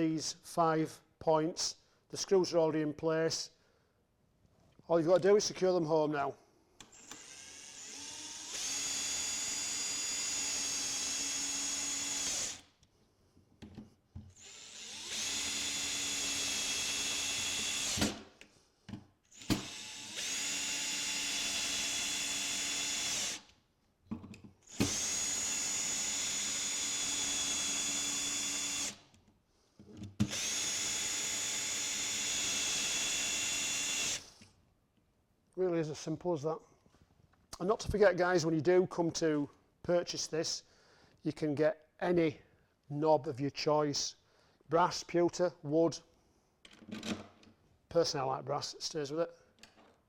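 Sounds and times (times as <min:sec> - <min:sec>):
electric drill whining: 0:06.8 - 0:12.7, 0:14.3 - 0:18.2, 0:19.3 - 0:23.5, 0:24.6 - 0:29.0, 0:30.2 - 0:34.4.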